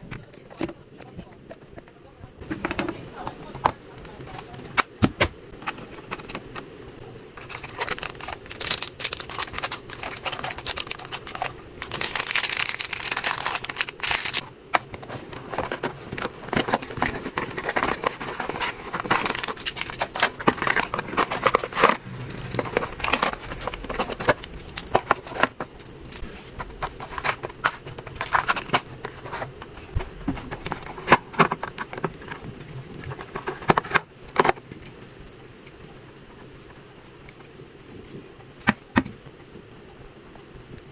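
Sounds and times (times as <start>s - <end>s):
packaging crinkling and rustling: 7.4s - 38.8s.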